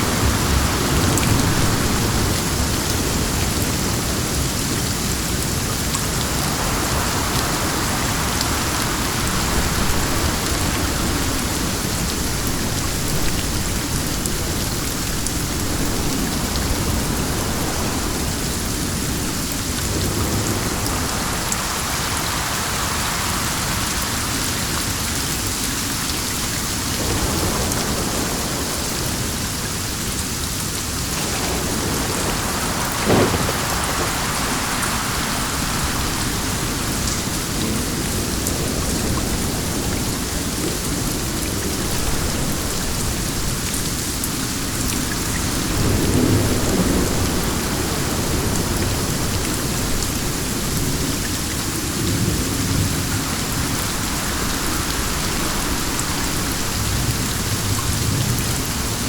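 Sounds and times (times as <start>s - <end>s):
heavy rain falling: 0.0s - 59.0s
wind: 0.0s - 59.0s
low thunder rumbles: 26.8s - 43.9s, 44.8s - 59.0s
sharp thunder crack: 31.1s - 36.8s.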